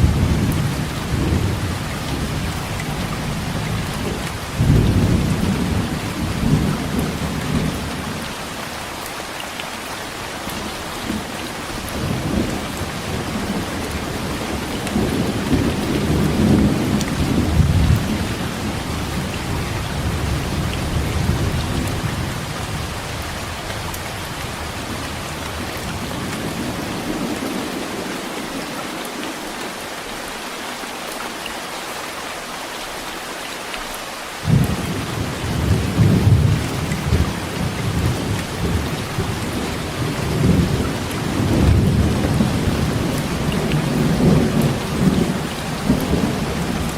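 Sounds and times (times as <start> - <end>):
heavy rain: 0.0 - 46.9
thunder rumbling: 11.8 - 23.1, 34.4 - 46.9.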